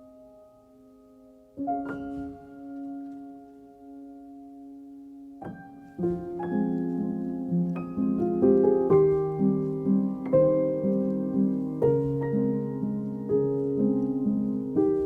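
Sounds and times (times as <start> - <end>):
gentle piano melody: 0.0 - 15.0.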